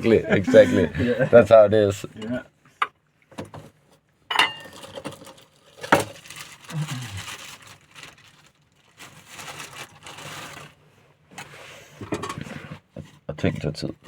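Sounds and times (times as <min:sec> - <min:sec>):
rustling and crinkling: 0:03.5 - 0:14.0.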